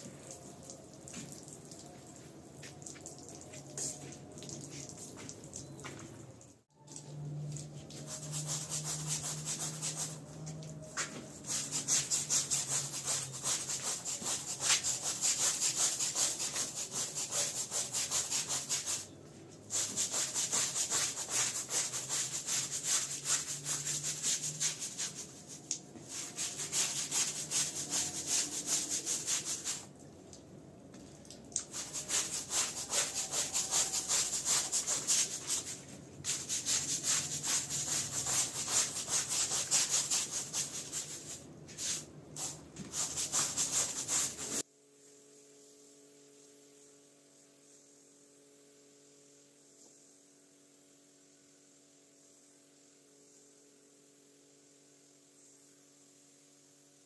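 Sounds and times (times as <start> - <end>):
stiff brush scrubbing wet rug: 0.2 - 5.5, 7.4 - 29.9, 31.6 - 44.6.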